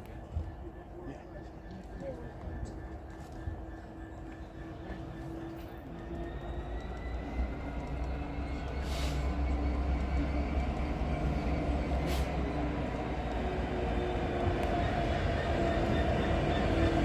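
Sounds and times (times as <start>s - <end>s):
train rumble: 0.0s - 17.0s
brief hisses: 8.8s - 9.2s, 12.1s - 12.3s.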